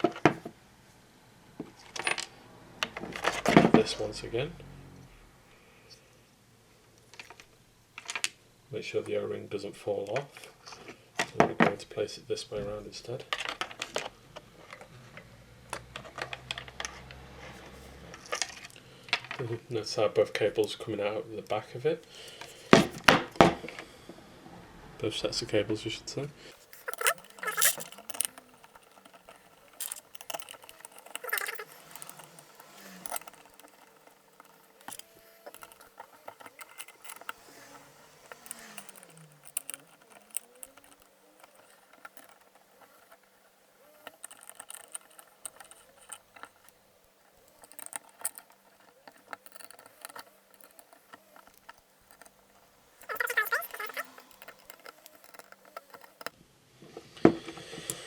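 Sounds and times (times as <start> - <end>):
handling plastic and metal parts: 1.6 - 4.0, 13.1 - 23.9, 26.5 - 56.4
faint squeaks: 26.3 - 56.4.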